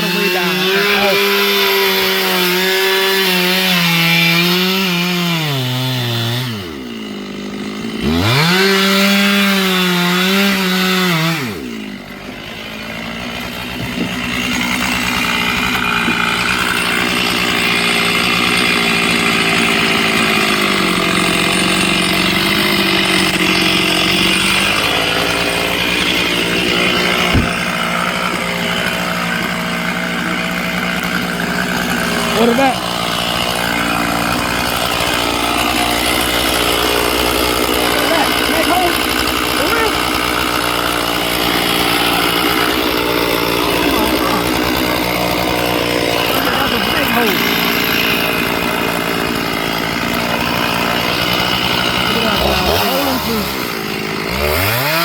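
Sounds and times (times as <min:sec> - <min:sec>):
chainsaw revving: 0:00.0 - 0:55.0
sharp knock: 0:27.2 - 0:27.6.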